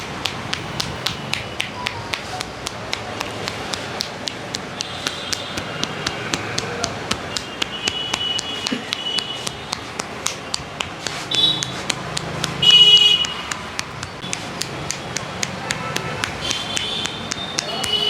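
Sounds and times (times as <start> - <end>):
hand slaps on scalp: 0.0 - 12.7.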